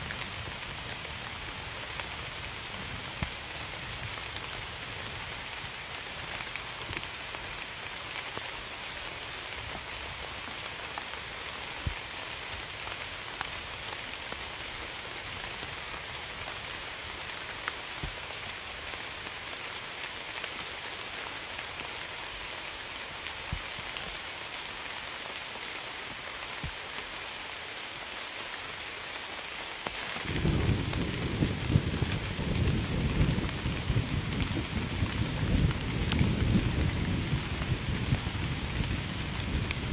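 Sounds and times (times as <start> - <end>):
steady rain falling: 0.0 - 39.9
low rumble of thunder: 30.2 - 39.9.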